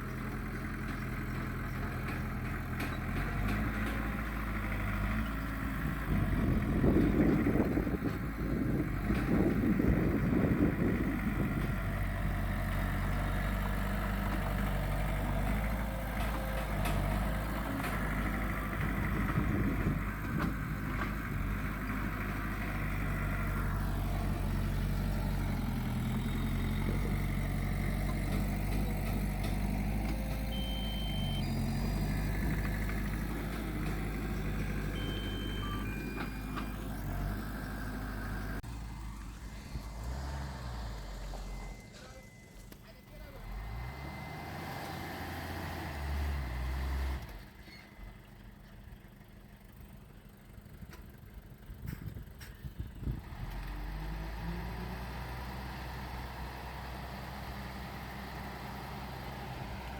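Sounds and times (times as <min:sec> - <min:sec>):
diesel engines of earthmoving machinery: 0:00.0 - 0:59.9
short high beeps: 0:30.5 - 0:31.6, 0:35.0 - 0:36.8, 0:41.4 - 0:43.2.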